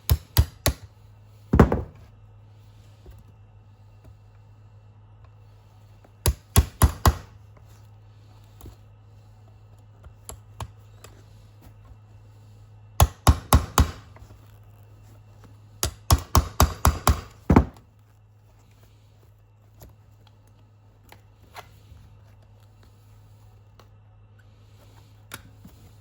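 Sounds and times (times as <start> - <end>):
hammer blows on pins: 13.0 - 14.2.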